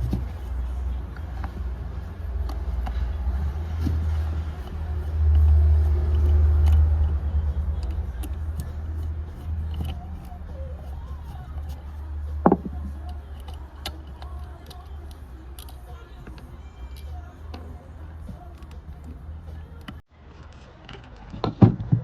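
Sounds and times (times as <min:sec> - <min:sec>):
car engine running: 0:00.0 - 0:20.0.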